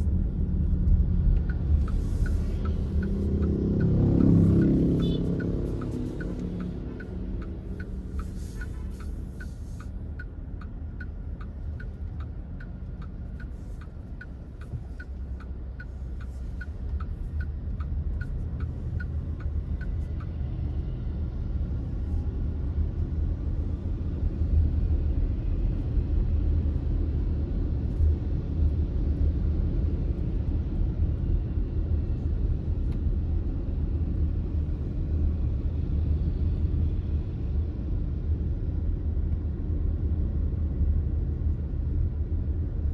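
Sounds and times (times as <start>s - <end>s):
turn signal ticking: 0.0s - 24.4s
car driving rumble: 0.0s - 42.9s.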